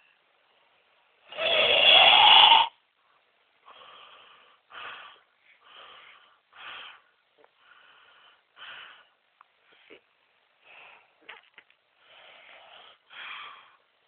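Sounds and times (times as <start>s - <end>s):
quiet wheezing breaths: 0.0s - 1.8s, 2.7s - 14.0s
person snoring: 1.3s - 2.8s.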